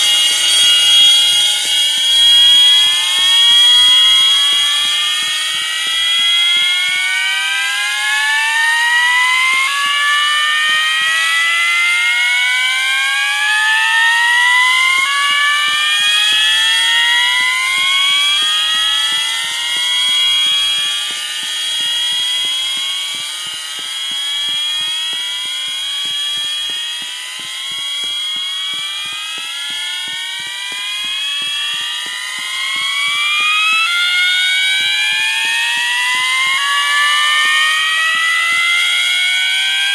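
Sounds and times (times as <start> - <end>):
fire alarm horns slow whoop: 0.0 - 39.9
steady high tone: 0.0 - 39.9.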